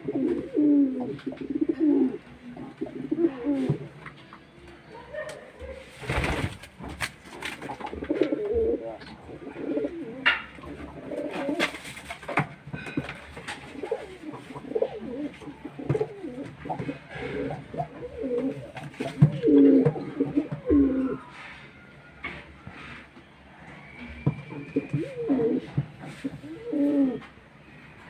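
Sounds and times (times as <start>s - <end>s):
pigeons cooing: 0.0s - 4.0s, 7.4s - 21.8s, 23.6s - 27.3s.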